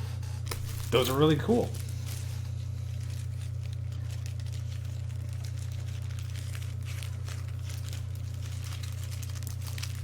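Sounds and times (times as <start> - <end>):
low hum: 0.0 - 10.0
packaging crinkling: 0.4 - 10.0.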